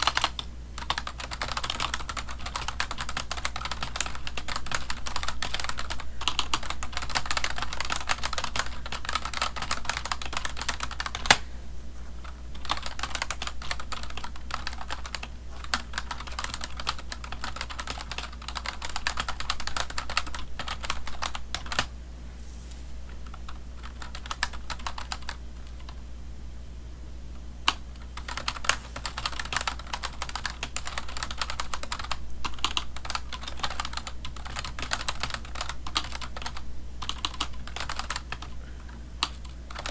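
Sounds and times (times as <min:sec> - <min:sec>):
typing on computer keyboard: 0:00.0 - 0:11.4, 0:12.2 - 0:21.9, 0:23.2 - 0:26.0, 0:27.7 - 0:38.6, 0:39.2 - 0:39.9.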